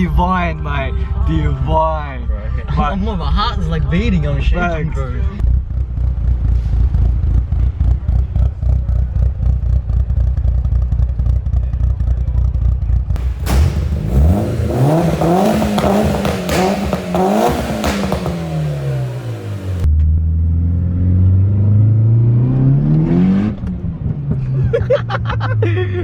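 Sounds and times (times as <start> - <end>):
loud turbo rushing noise: 13.2 - 19.8
turbocharged car engine accelerating: 13.2 - 24.6.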